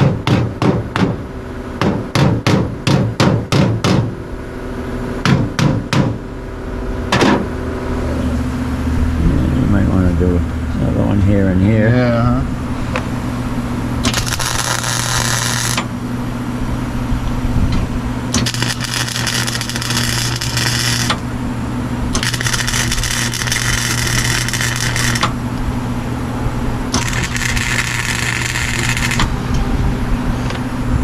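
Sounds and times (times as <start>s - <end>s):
steady low hum: 0.0s - 31.0s
mig welder crackling: 13.9s - 16.3s, 17.2s - 21.4s, 22.0s - 25.8s, 26.8s - 29.6s.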